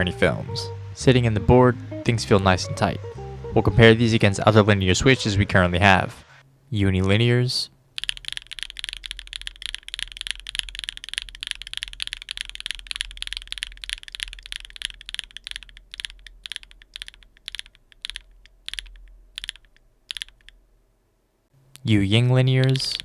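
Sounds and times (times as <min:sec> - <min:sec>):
fast typing on mechanical keyboard: 0:08.0 - 0:20.6.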